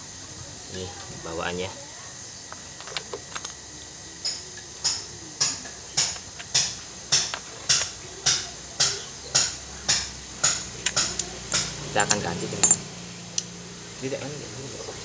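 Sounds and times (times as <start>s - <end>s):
metal-on-metal tapping: 12.0s - 12.8s.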